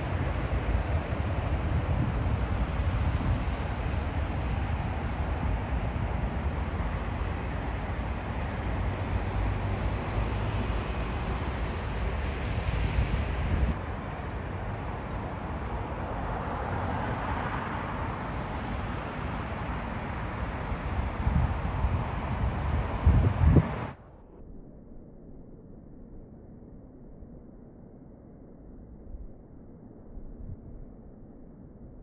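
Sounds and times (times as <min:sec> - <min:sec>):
wind on microphone: 0:00.0 - 0:14.1, 0:17.8 - 0:24.0
jet airliner engine rush: 0:00.0 - 0:24.0.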